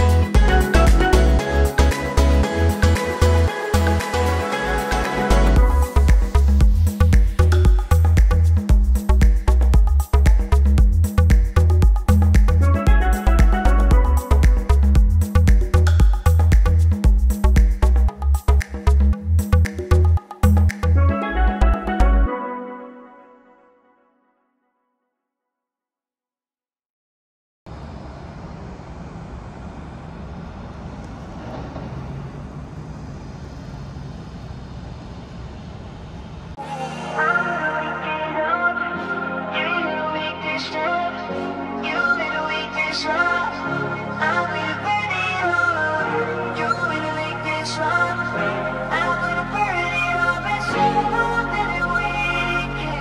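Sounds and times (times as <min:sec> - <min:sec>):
electronic dance music: 0:00.0 - 0:22.6, 0:36.6 - 0:53.0
low outdoor rumble: 0:27.7 - 0:36.6.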